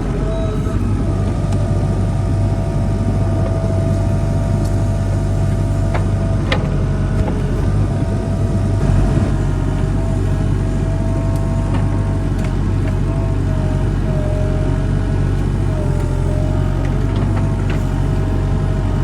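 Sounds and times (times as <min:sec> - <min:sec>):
steady whine: 0:00.0 - 0:14.3
heavy equipment engine running: 0:00.0 - 0:19.0.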